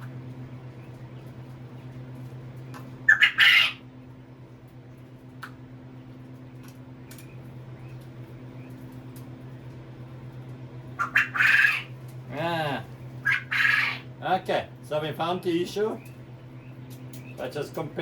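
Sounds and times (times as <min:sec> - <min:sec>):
low hum: 0:00.0 - 0:18.0
quail calling: 0:03.0 - 0:03.8, 0:10.9 - 0:12.0, 0:12.9 - 0:14.1.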